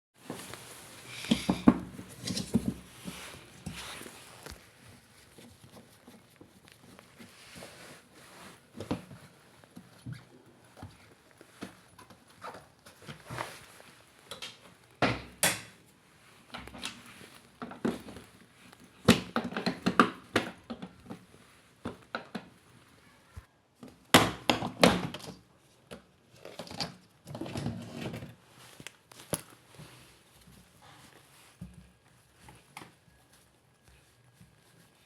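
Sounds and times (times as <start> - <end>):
hard objects knocking and clattering: 1.1 - 2.9.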